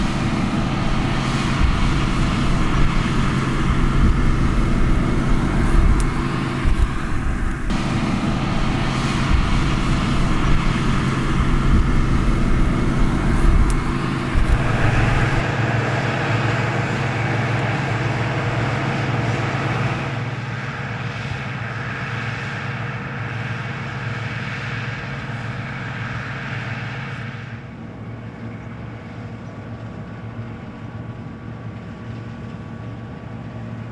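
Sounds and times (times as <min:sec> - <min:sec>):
heavy low rumble: 0:00.0 - 0:20.2
combine harvester engine droning: 0:00.0 - 0:33.9.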